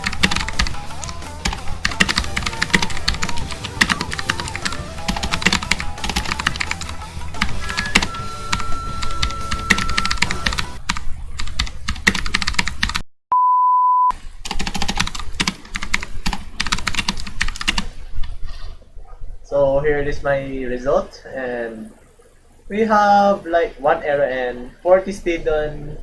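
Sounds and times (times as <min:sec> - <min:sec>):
background music: 0:00.0 - 0:12.2
mechanical keyboard typing: 0:00.0 - 0:13.0, 0:14.4 - 0:18.0
steady beep: 0:07.6 - 0:10.8, 0:13.3 - 0:14.1.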